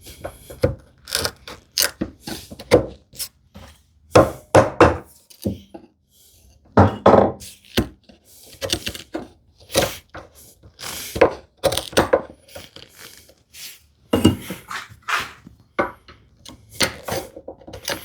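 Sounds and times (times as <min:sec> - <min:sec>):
chisel scraping wood: 0:00.2 - 0:03.3, 0:14.4 - 0:15.6.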